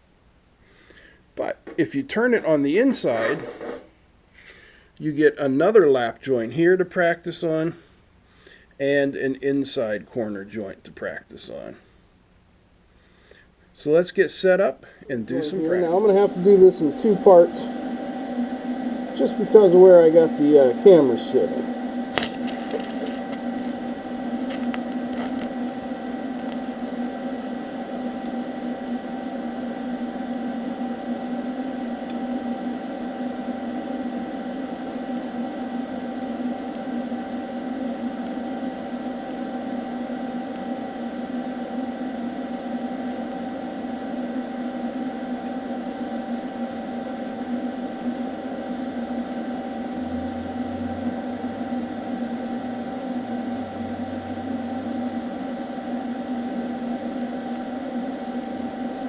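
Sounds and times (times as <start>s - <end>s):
welding arc humming: 14.6s - 59.0s.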